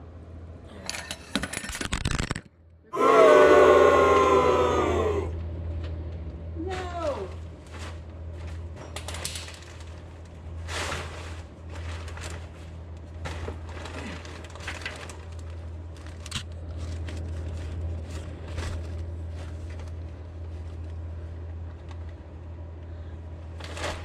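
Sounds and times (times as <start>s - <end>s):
rustles and light knocks: 6.8s - 21.1s.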